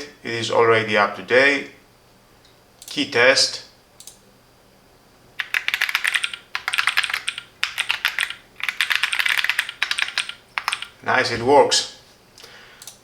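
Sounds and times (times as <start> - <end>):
mechanical keyboard typing: 5.4 - 11.0.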